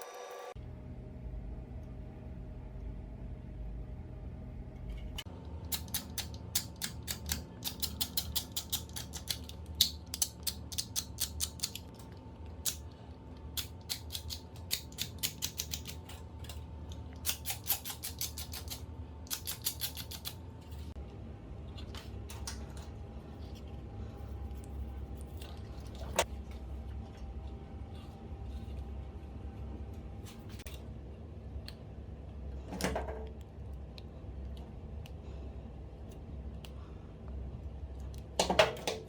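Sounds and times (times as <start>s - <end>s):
sharp mechanical clicks: 5.6s - 12.0s, 13.5s - 16.2s, 17.2s - 20.4s.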